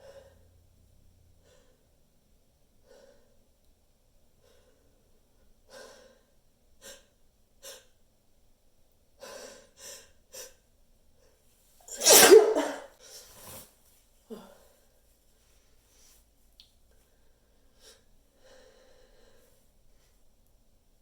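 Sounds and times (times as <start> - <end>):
person sneezing: 11.9 - 12.9
soft breaths: 17.0 - 20.3.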